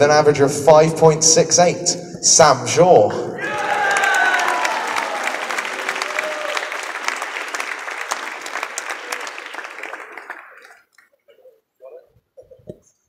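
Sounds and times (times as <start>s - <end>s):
audience applauding: 3.4s - 11.2s.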